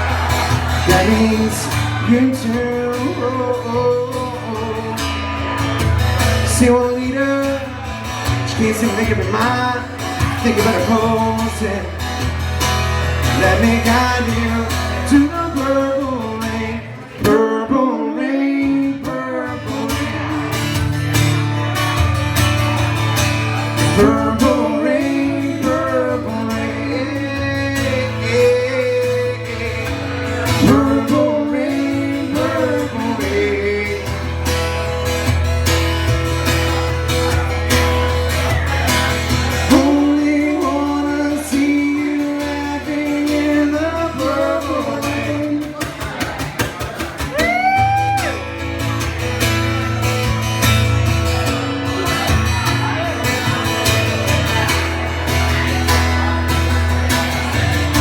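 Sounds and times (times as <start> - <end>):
acoustic guitar: 0.0 - 58.0
person singing: 13.3 - 20.7, 23.9 - 34.3, 47.2 - 48.4.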